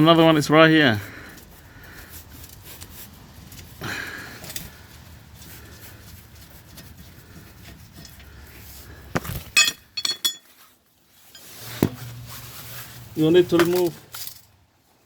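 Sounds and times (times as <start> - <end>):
tools clinking against metal: 9.6 - 10.6.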